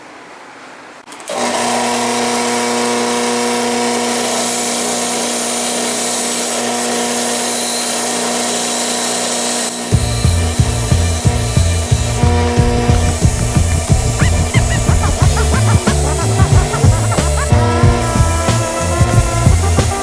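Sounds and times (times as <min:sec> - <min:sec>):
electric power tool humming: 0:01.3 - 0:20.0
music with low beat: 0:10.0 - 0:20.0.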